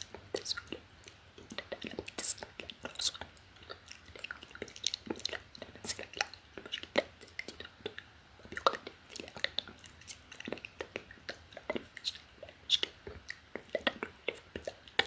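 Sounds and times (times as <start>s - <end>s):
tongue clicks and lip smacks: 0.0s - 15.0s
whispering: 2.2s - 3.2s, 5.8s - 6.1s.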